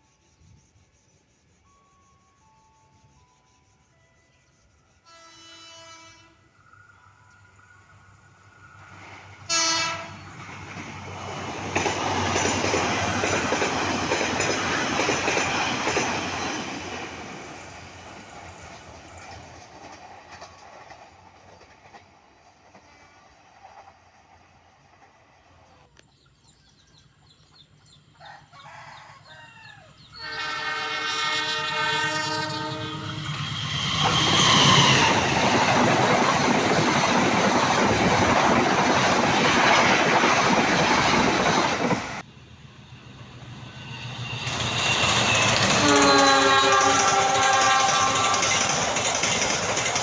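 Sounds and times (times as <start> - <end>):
train passing with rushing: 1.4 - 25.9, 28.9 - 50.0
diesel locomotive horn chord: 3.9 - 6.6, 9.4 - 10.3, 30.1 - 33.6, 45.6 - 48.8
train wheel clatter: 10.3 - 25.3, 33.4 - 42.3, 44.0 - 50.0.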